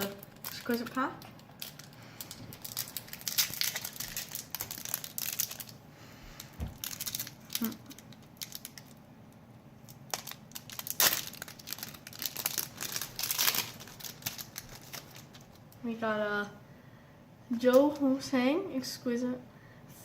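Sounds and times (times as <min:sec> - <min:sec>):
foil pack tearing and crinkling: 0:00.0 - 0:05.8, 0:06.4 - 0:09.0, 0:09.9 - 0:15.6.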